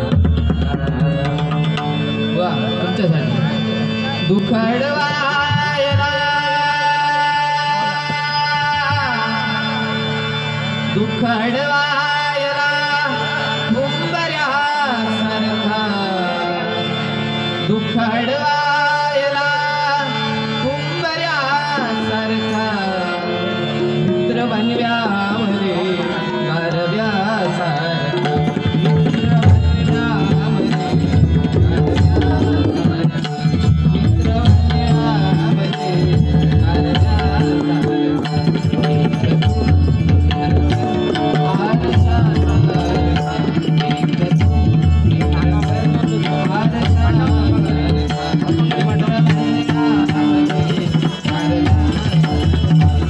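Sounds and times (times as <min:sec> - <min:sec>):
man singing devotional song: 0:00.0 - 0:53.0
steady accompaniment: 0:00.0 - 0:53.0
fast hand-drum playing: 0:28.5 - 0:53.0.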